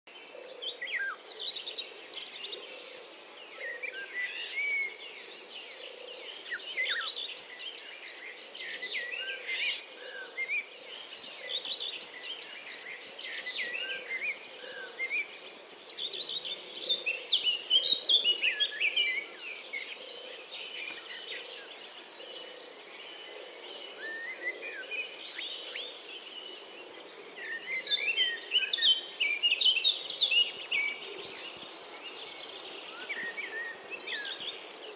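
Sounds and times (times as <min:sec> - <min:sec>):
robin singing: 0:27.2 - 0:34.9.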